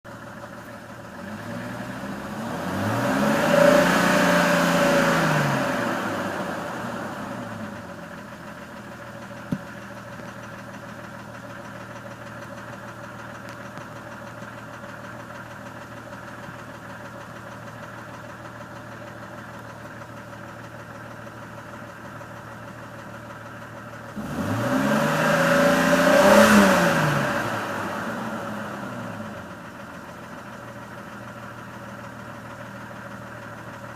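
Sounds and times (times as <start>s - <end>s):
car engine idling with a tick: 0.1s - 1.2s, 7.5s - 24.2s, 27.7s - 33.9s
engine revving: 1.2s - 7.8s, 24.1s - 29.5s.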